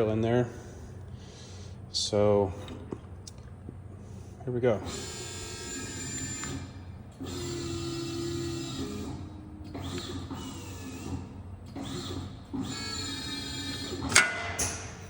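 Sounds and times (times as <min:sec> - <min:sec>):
press brake machine hum: 0:00.0 - 0:15.0
machine whining tones: 0:04.8 - 0:14.7.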